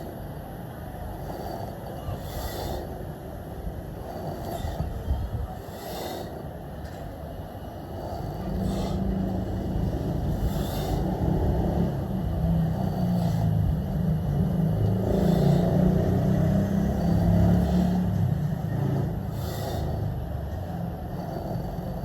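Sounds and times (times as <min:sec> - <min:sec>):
motor traffic rumble: 0:00.0 - 0:22.0.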